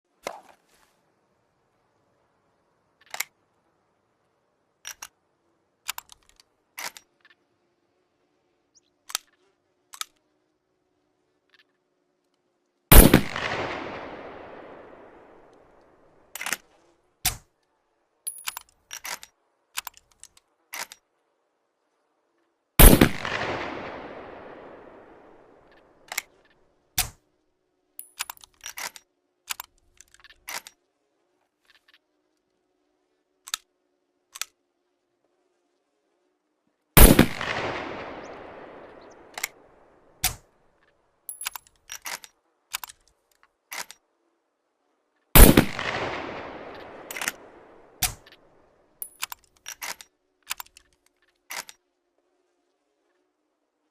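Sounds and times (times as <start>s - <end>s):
clicks and rattles of handling: 3.0s - 3.4s, 4.8s - 5.2s, 5.8s - 7.5s, 16.3s - 17.7s, 18.3s - 21.1s, 25.6s - 27.2s, 28.0s - 32.5s, 40.2s - 44.1s, 46.6s - 51.9s
rifle shots with echo: 12.9s - 15.7s, 22.8s - 26.1s, 37.0s - 40.4s, 45.4s - 48.3s.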